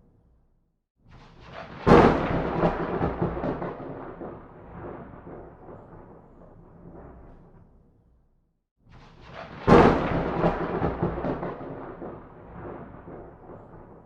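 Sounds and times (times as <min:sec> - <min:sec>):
thunderclap: 0:01.3 - 0:07.6, 0:09.2 - 0:14.0.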